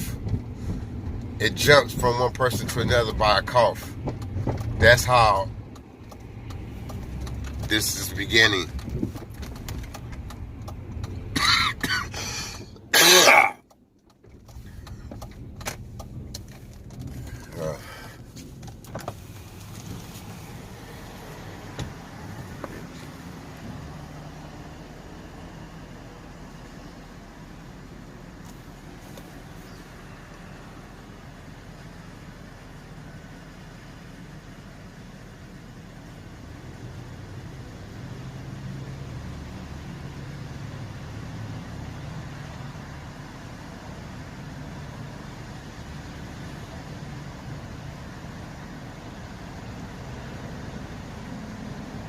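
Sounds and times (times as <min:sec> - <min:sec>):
car rumbling while driving: 0:00.0 - 0:52.0
road noise: 0:00.0 - 0:52.0.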